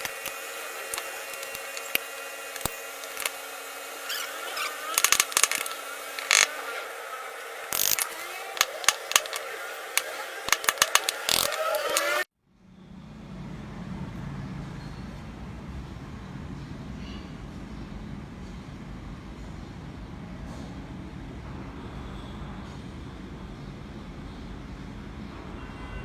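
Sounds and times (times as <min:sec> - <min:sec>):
small power tool whining: 0:00.0 - 0:12.3.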